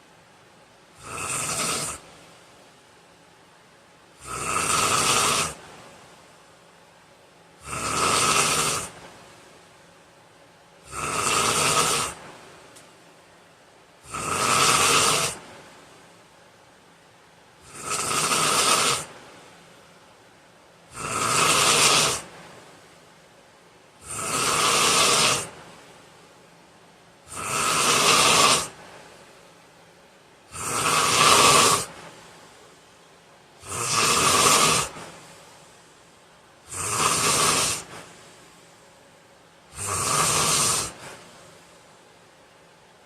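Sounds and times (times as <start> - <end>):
man snoring: 1.0 - 2.0, 4.2 - 5.6, 7.6 - 9.0, 10.8 - 12.2, 14.0 - 15.4, 17.6 - 19.1, 20.9 - 22.3, 24.0 - 25.6, 27.3 - 28.8, 30.5 - 32.0, 33.6 - 35.1, 36.7 - 38.0, 39.7 - 41.2
quiet breathing: 30.8 - 42.1.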